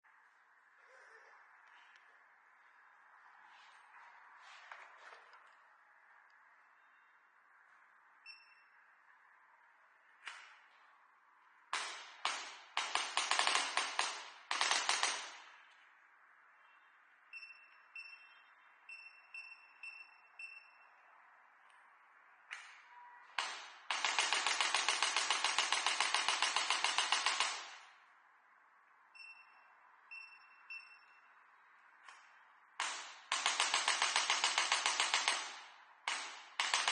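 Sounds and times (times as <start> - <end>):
short electronic beeps: 8.2 - 9.0, 16.6 - 21.2, 29.1 - 31.6.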